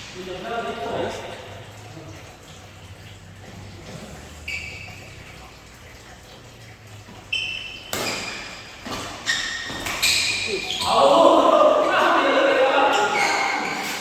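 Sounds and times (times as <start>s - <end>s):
shoes squeaking on court floor: 4.0s - 5.2s, 7.1s - 11.2s, 12.9s - 14.0s
racket hitting shuttlecock: 7.9s - 9.1s.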